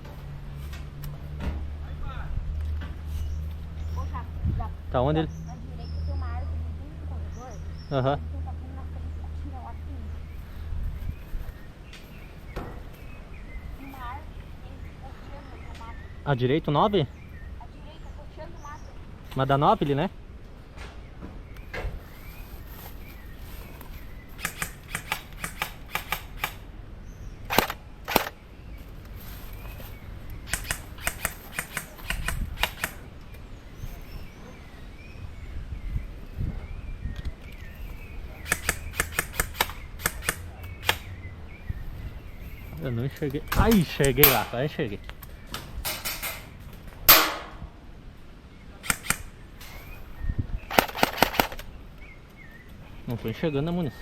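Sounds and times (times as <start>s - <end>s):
airsoft gun shots clicking: 24.4s - 26.7s, 27.5s - 28.4s, 30.5s - 33.0s, 38.4s - 41.1s, 48.8s - 49.3s, 50.7s - 51.7s
loud cracks: 24.4s - 26.7s, 27.5s - 28.4s, 30.5s - 33.0s, 48.8s - 49.3s, 50.7s - 51.7s.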